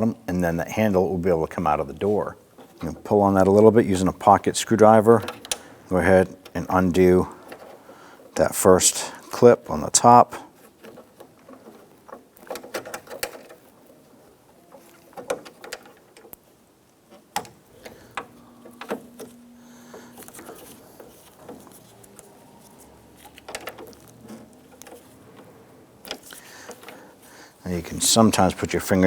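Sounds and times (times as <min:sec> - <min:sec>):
plastic clicks and rattles: 0:05.1 - 0:06.6, 0:10.5 - 0:27.3.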